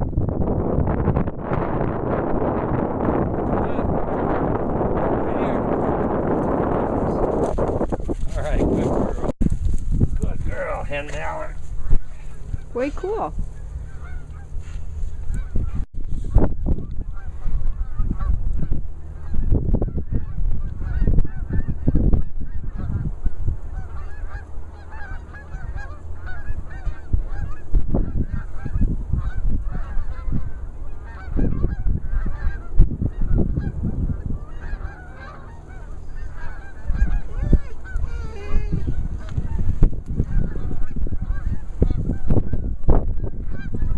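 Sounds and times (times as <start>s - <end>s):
low rumbles: 0.0s - 43.9s
geese honking: 10.5s - 43.9s.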